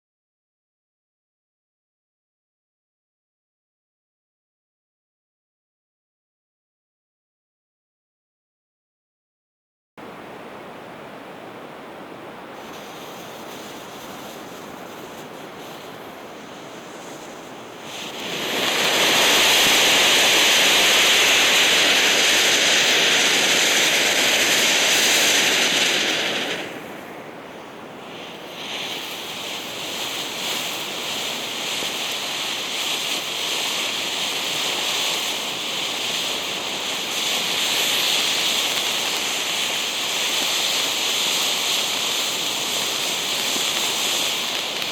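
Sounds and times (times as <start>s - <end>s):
firework fountain hissing: 12.5s - 44.9s.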